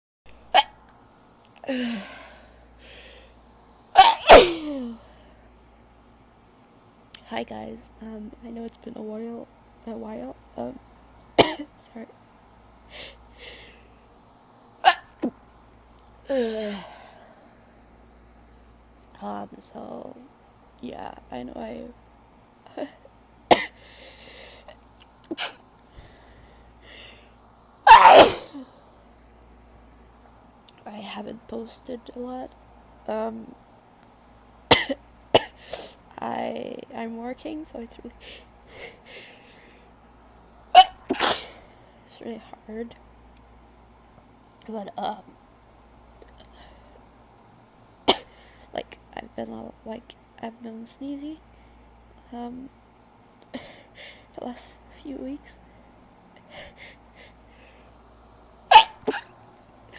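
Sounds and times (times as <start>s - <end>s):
in-breath: 1.6s - 3.4s, 12.9s - 14.0s, 16.3s - 17.5s, 23.8s - 24.7s, 25.9s - 27.4s, 38.2s - 39.9s, 46.4s - 47.1s, 53.5s - 54.3s, 55.6s - 58.0s
woman sneezing: 4.0s - 5.0s, 25.3s - 25.6s, 27.9s - 28.7s, 40.8s - 41.6s, 58.7s - 59.3s.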